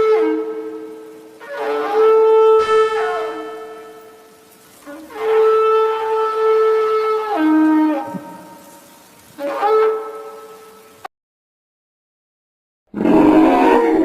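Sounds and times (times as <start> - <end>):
dinosaur honking call: 0.0 - 8.6.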